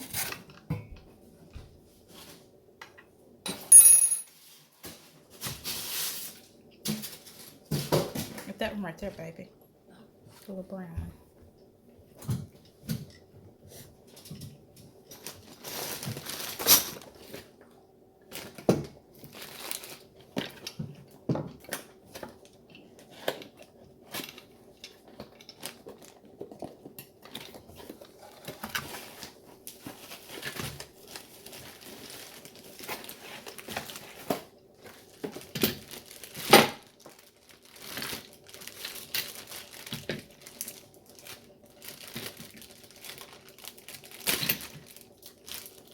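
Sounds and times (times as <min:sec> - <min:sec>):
packaging crinkling: 0:15.1 - 0:17.6, 0:18.3 - 0:20.7, 0:21.8 - 0:45.9.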